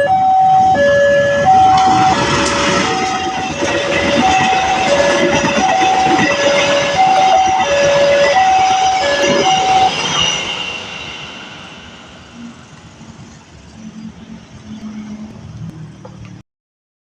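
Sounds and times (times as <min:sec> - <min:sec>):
level-crossing two-tone alarm: 0:00.0 - 0:12.8
passing train: 0:00.0 - 0:16.4.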